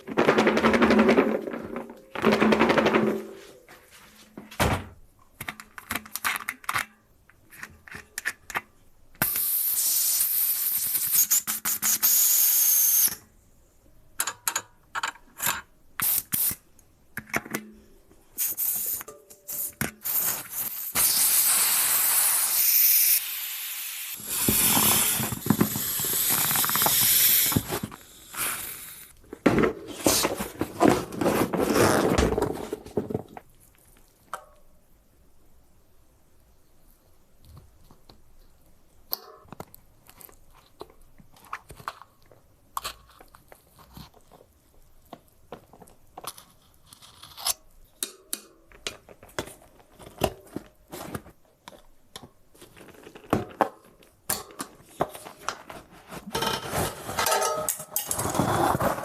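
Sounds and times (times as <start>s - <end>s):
spray hissing: 18.4s - 29.1s.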